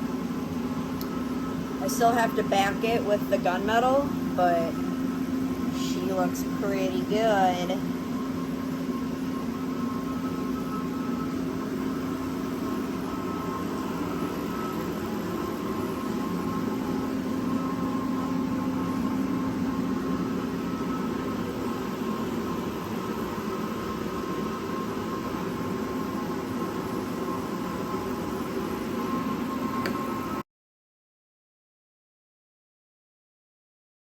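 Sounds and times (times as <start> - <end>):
motor hum with faint whine: 0.0 - 30.4.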